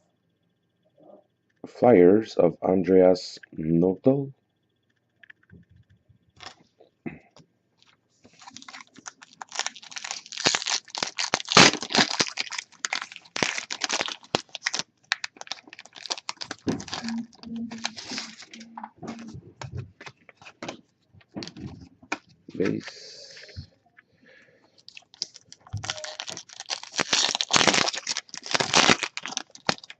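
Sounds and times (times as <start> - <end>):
wrapper tearing and crinkling: 8.4 - 19.2, 24.9 - 29.9.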